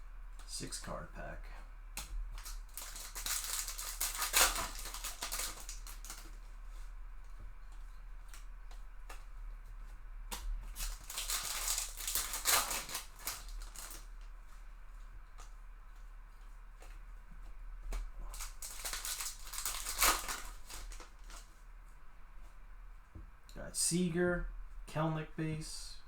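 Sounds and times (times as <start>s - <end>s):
wrapper crinkling and tearing: 2.4s - 6.4s, 10.7s - 14.2s, 18.2s - 21.5s.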